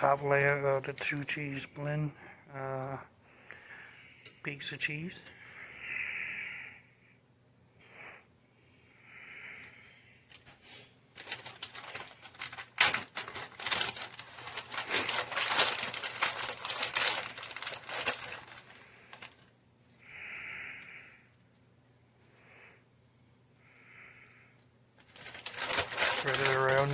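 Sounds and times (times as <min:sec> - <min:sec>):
plastic bag crinkling: 0:00.0 - 0:01.7, 0:10.3 - 0:19.5, 0:25.0 - 0:26.9.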